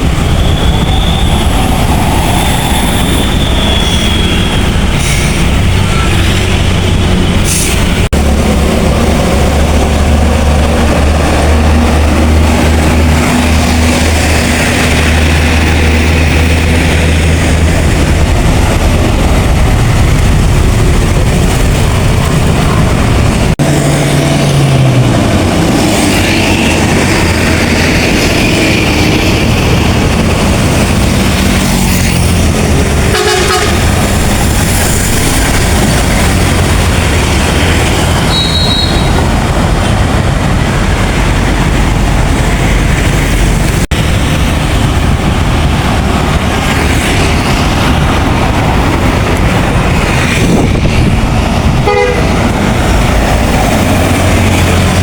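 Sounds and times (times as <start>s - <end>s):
buses passing with engine rumble: 0.0s - 55.0s
bus horn toot: 33.0s - 34.1s, 38.3s - 39.2s, 51.8s - 52.4s.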